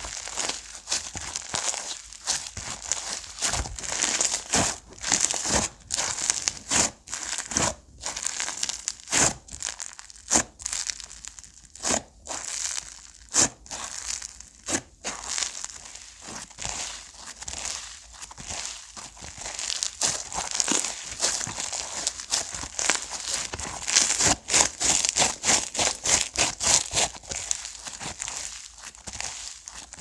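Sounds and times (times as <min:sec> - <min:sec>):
slime popping and crackling: 0:00.0 - 0:30.0.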